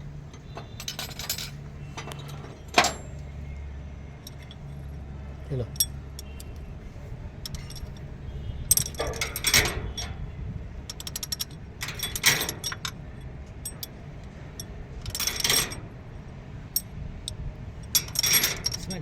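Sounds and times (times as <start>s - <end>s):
metal tools clinking: 0.4s - 3.3s, 4.2s - 4.9s, 7.4s - 8.1s, 8.7s - 10.2s, 10.9s - 13.0s, 14.6s - 15.9s, 17.9s - 19.0s.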